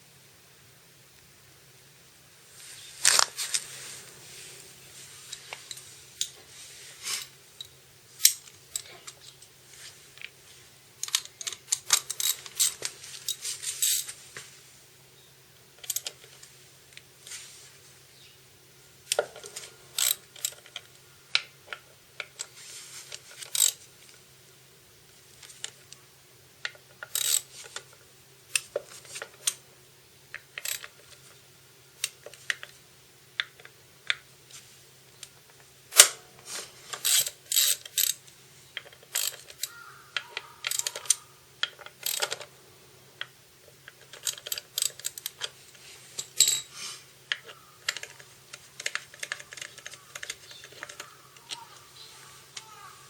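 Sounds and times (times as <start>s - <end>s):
faint steady hum: 0.0s - 53.0s
metal tools clicking and clinking: 11.0s - 14.1s, 27.0s - 27.5s, 36.9s - 38.2s, 38.8s - 42.5s, 44.0s - 45.5s, 46.2s - 46.7s, 47.3s - 51.7s.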